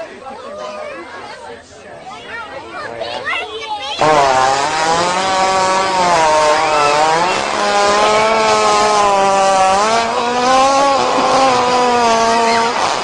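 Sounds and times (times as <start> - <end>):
buzzing fart: 4.0 - 13.0.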